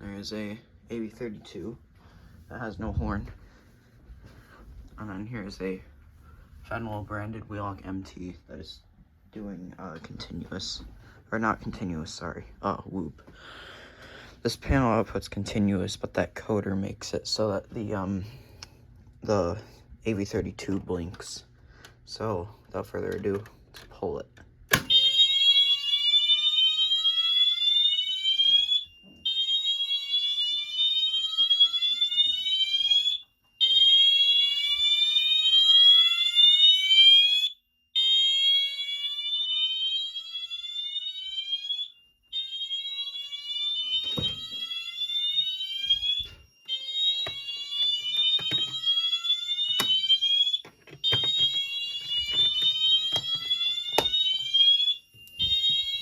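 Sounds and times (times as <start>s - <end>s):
fire alarm horn whooping: 24.7s - 56.0s.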